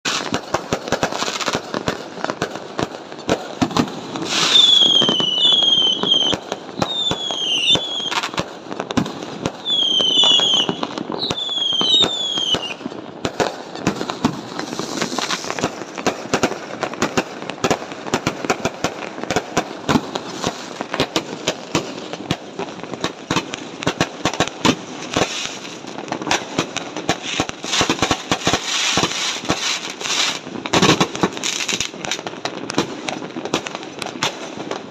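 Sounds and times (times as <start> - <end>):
fireworks popping and banging: 0.0 - 34.9
falling firework whistles: 3.2 - 16.5, 24.6 - 26.4, 27.1 - 31.9.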